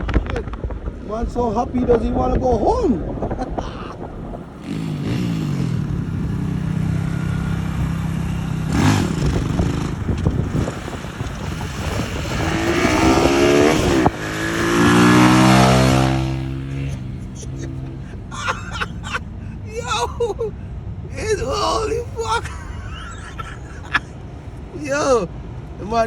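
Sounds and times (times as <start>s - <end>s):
motorcycle engine running and revving: 4.6s - 18.2s.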